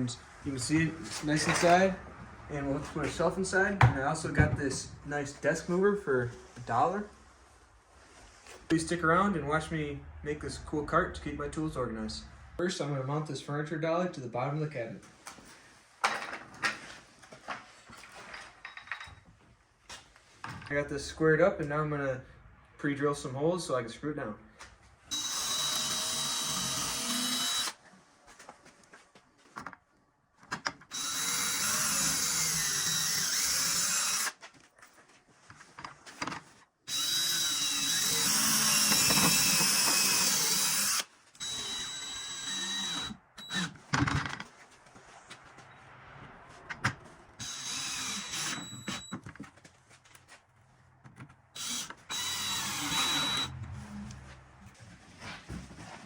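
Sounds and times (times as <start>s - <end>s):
drill clicks: 25.1s - 27.8s, 30.9s - 34.4s, 36.9s - 43.8s, 47.4s - 49.1s, 51.6s - 53.5s
power drill whining: 25.1s - 27.8s, 30.9s - 34.4s, 36.9s - 43.8s, 47.4s - 49.1s, 51.6s - 53.5s.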